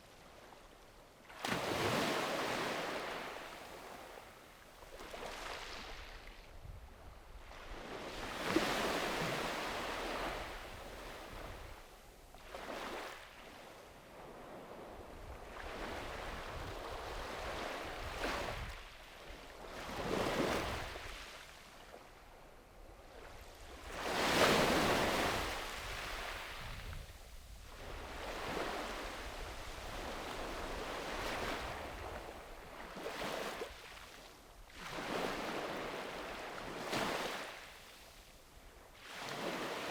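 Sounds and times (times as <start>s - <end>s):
sea waves breaking on beach: 4.9s - 6.3s, 7.6s - 11.4s, 23.8s - 27.0s, 39.0s - 39.9s
low rumble of surf: 21.8s - 33.7s.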